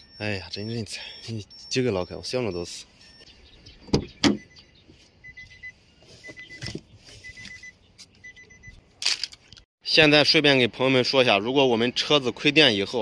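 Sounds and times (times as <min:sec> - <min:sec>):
faint high electronic beep: 0:00.0 - 0:03.3, 0:04.4 - 0:08.8.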